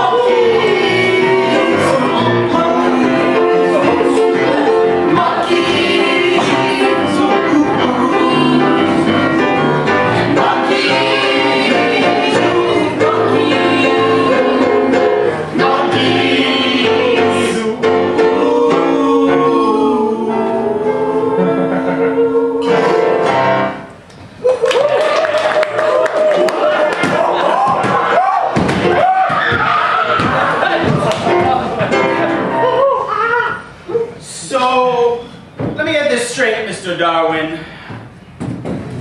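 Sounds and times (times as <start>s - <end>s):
group singing in harmony: 0.0s - 23.9s.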